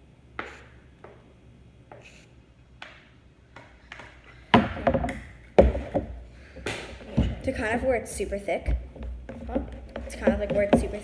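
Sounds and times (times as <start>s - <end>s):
spoon stirring and scraping: 8.9s - 11.0s.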